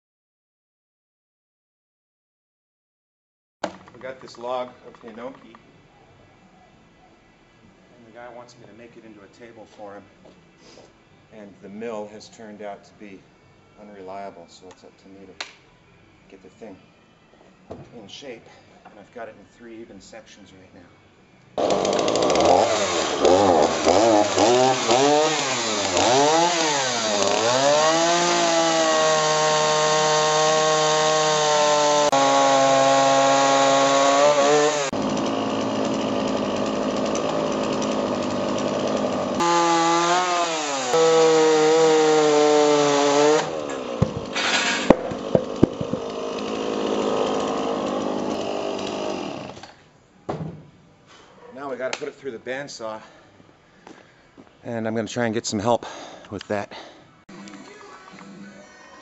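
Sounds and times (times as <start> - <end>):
chainsaw cutting log: 21.6 - 49.8
sharp engine knocks: 44.0 - 46.1.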